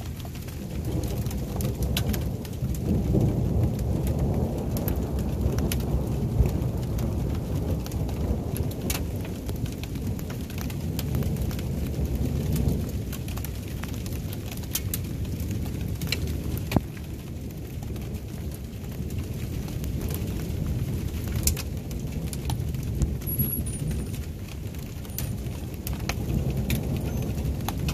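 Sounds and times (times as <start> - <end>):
low thunder rumble: 0.0 - 27.9
rain falling: 0.0 - 27.9
raindrops ticking on surface: 0.0 - 27.9.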